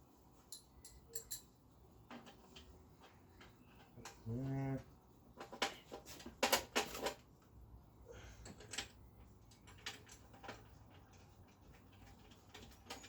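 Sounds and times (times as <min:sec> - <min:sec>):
metal parts and tools clicking: 0:00.5 - 0:04.2, 0:08.4 - 0:13.0.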